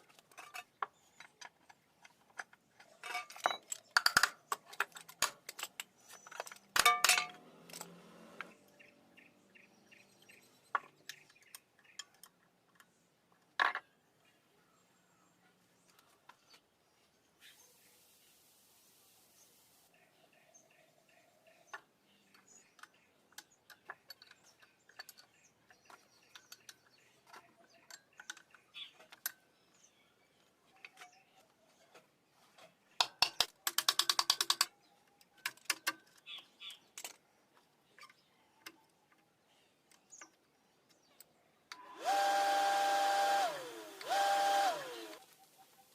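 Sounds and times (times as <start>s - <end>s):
clicks and taps of parts: 0.1s - 8.6s, 10.7s - 13.8s, 21.7s - 29.4s, 33.0s - 39.2s
fast rattle of clicks: 33.0s - 34.7s
small electric motor whining: 41.8s - 45.5s.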